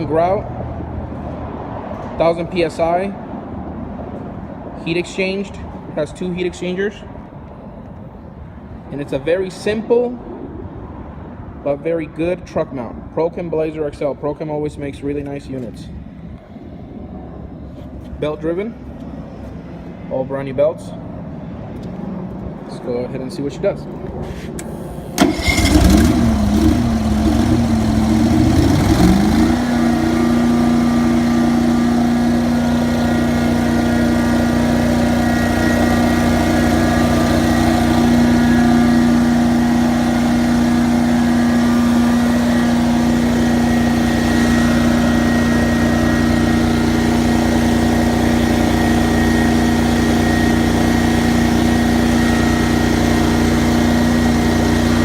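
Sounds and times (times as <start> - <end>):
engine starting and running: 24.4 - 55.0.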